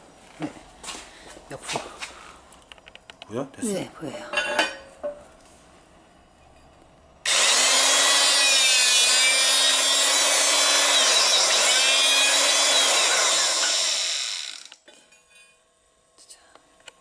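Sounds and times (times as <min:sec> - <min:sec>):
hydraulic punch motor whining: 0:07.2 - 0:14.8.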